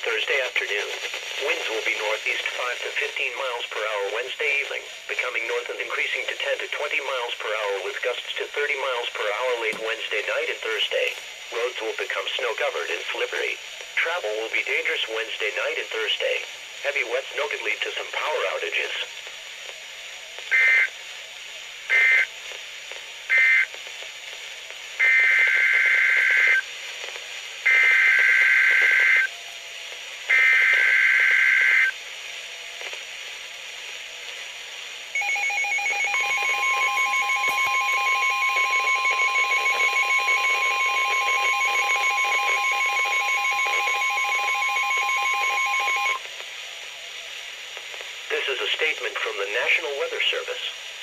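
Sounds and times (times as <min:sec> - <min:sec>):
steady weather radio alert tone: 0:00.0 - 0:22.6, 0:23.3 - 0:50.8.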